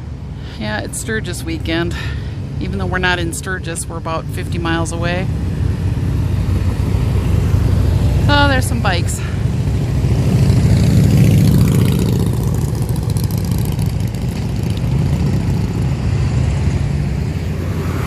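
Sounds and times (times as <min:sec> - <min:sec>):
motorcycles passing by: 0:04.9 - 0:18.0.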